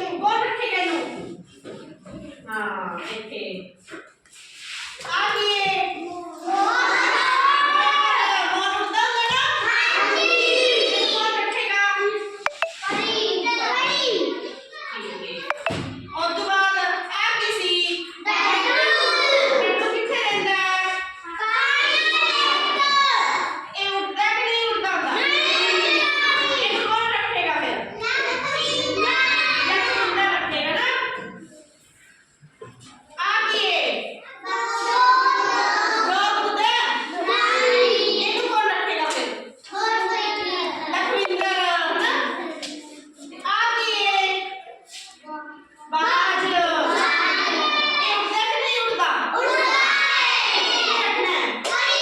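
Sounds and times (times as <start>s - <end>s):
young children's voices: 5.4s - 11.5s, 12.5s - 15.9s, 18.3s - 20.1s, 25.1s - 30.4s, 33.0s - 52.0s.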